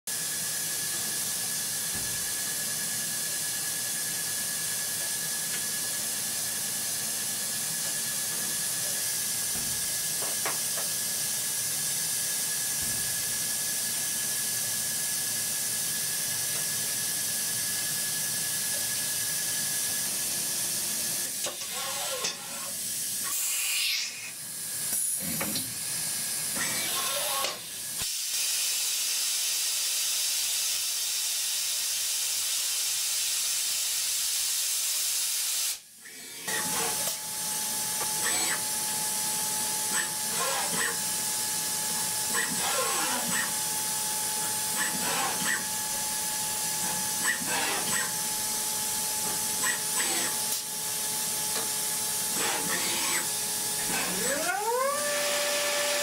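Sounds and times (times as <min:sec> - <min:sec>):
industrial machinery hiss: 0:00.1 - 0:54.1.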